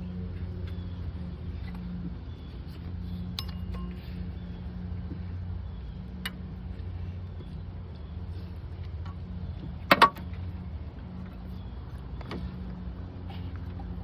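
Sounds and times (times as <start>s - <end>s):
steady low hum: 0.0s - 14.0s
tool clinking on metal: 3.4s - 4.0s.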